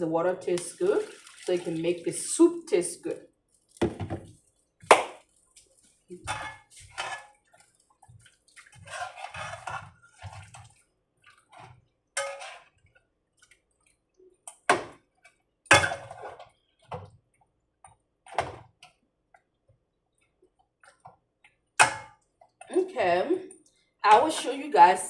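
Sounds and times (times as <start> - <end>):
water splashing: 0.6 - 2.5, 5.0 - 11.7.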